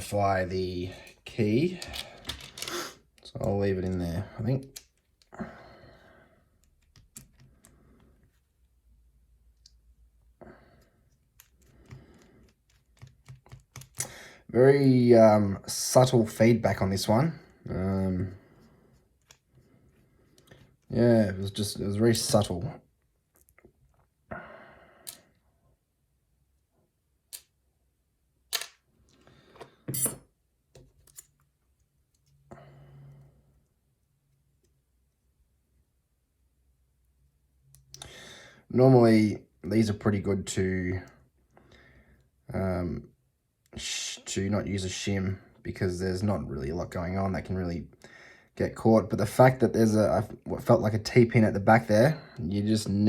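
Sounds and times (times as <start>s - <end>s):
lock picking clicks and taps: 11.4s - 14.1s.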